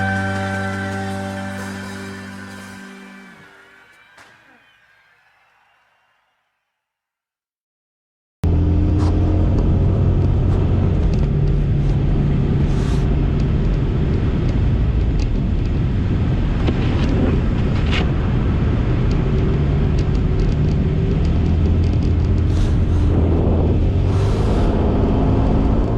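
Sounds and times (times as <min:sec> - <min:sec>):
road noise: 0:00.0 - 0:06.1, 0:08.4 - 0:25.9
car engine hum: 0:08.5 - 0:25.9.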